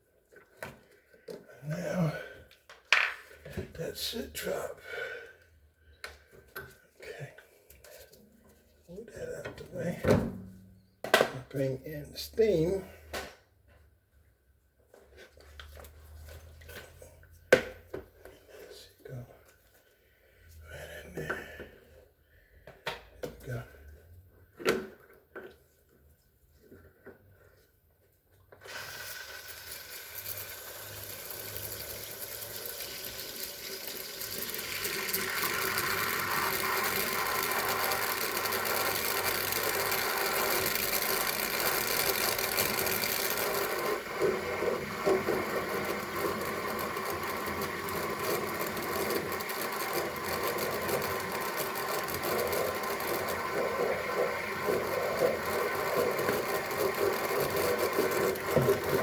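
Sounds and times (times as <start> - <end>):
steam cleaner hissing: 28.6 - 59.0.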